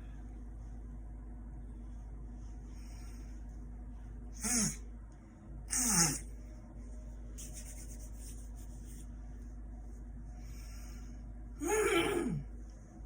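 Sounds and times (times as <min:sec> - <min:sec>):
woman grunting bursts of breath: 0:11.6 - 0:12.4.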